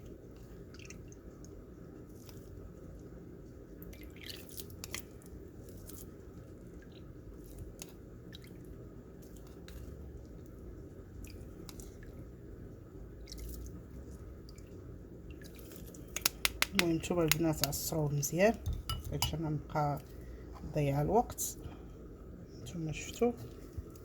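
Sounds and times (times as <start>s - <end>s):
wet squishing through strainer: 0.3s - 2.7s, 3.8s - 12.3s, 13.1s - 19.3s.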